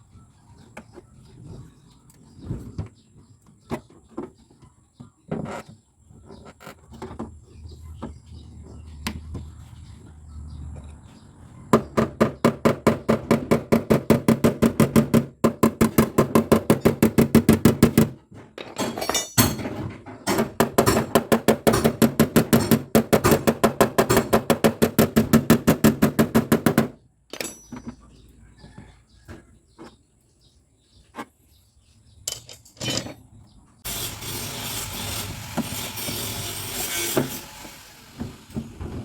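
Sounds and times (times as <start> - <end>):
hammer knocking on car body metal: 11.8 - 18.1, 20.3 - 26.9.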